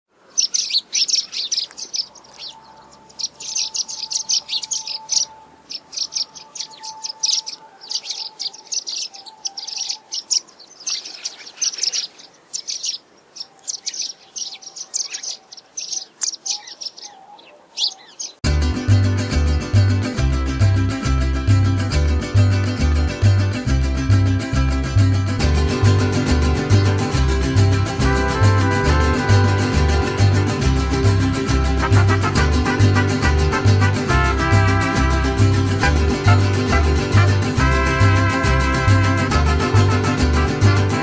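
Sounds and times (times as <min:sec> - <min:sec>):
small birds chirping: 0:00.1 - 0:18.4
plucked-string music: 0:18.4 - 0:41.0.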